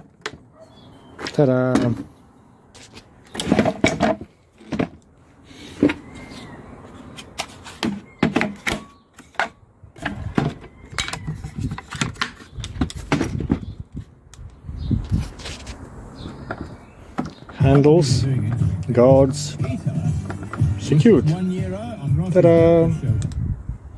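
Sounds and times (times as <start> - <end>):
knocks and clicks of handling: 0.0 - 0.5, 7.2 - 14.5, 16.4 - 18.7, 19.6 - 20.7.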